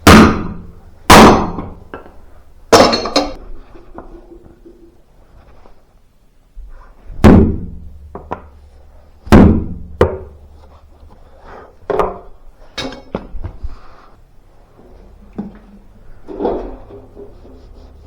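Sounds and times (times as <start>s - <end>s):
hard knocks on metal: 0.0s - 1.8s, 7.2s - 7.9s, 9.3s - 10.3s.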